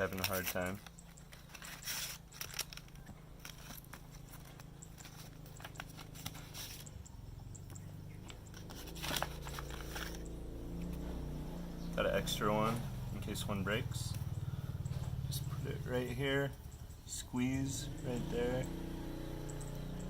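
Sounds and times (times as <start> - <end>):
clicks and scrapes of pieces: 0.1 - 6.9.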